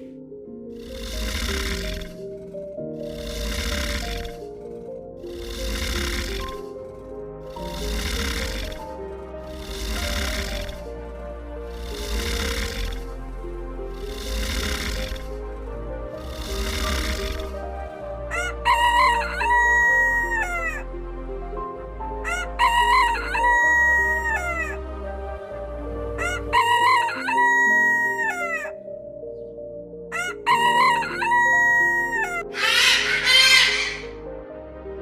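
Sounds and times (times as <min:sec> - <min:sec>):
background music: 0:00.0 - 0:35.0
rooster crowing: 0:18.3 - 0:20.8, 0:22.2 - 0:24.8, 0:26.2 - 0:28.7, 0:30.1 - 0:34.1.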